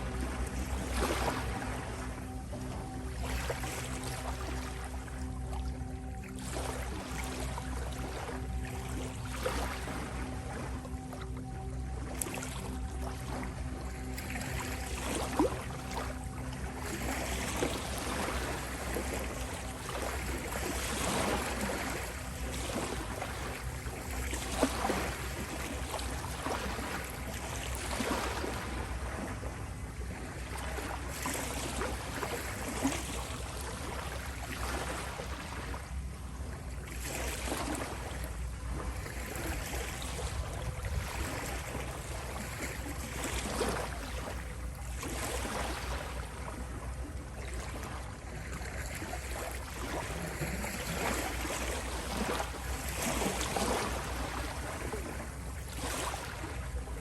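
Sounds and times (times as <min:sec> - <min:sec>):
steady low tones: 0:00.0 - 0:31.2.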